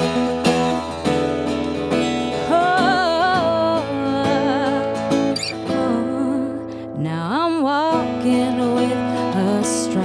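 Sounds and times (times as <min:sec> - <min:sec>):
acoustic guitar strumming: 0:00.0 - 0:10.0.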